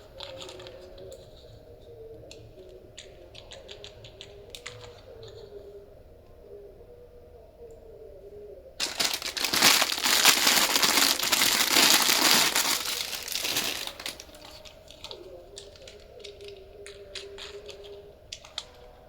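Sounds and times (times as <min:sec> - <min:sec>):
wrapping crinkling: 0:00.0 - 0:01.3, 0:08.8 - 0:19.0
light clicks and ticks: 0:12.6 - 0:19.0.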